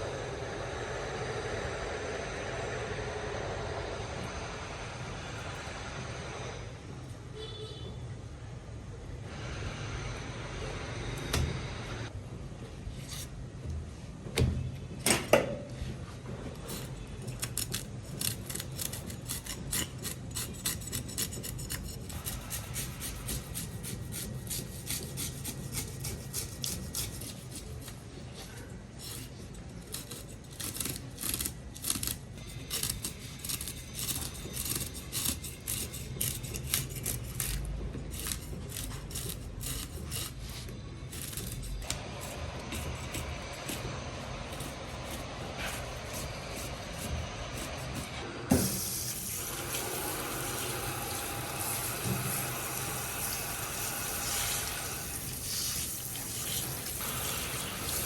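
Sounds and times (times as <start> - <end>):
blade scraping fish scales: 16.7 - 58.0.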